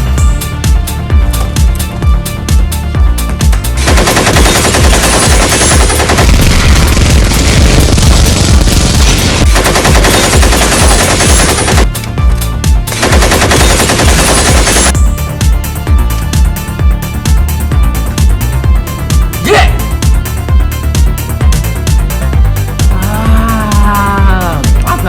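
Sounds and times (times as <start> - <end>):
machine-gun fire: 3.8 - 11.9, 12.9 - 15.0
electronic dance music: 16.4 - 25.0.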